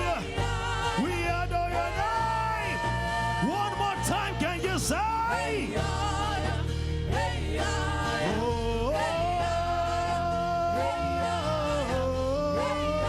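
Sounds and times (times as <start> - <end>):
band with steady bass: 0.0 - 13.0
person singing wordless notes: 8.1 - 13.0.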